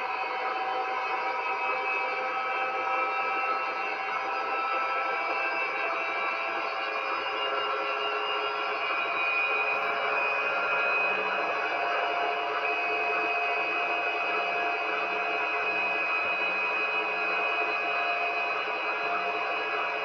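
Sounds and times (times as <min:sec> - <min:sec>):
washing machine motor whine: 0:00.0 - 0:20.0.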